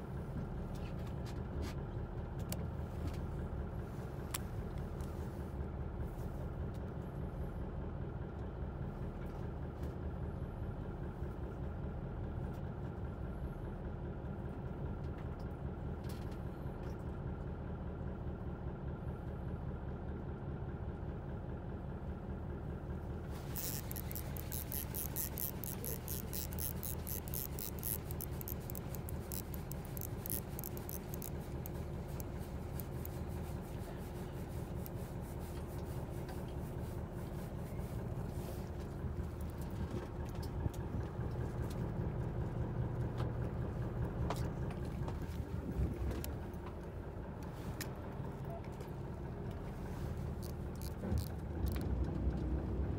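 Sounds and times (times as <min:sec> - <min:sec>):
boat engine rumbling: 0:21.9 - 0:52.9
rapid high clicking rattle: 0:23.3 - 0:33.8.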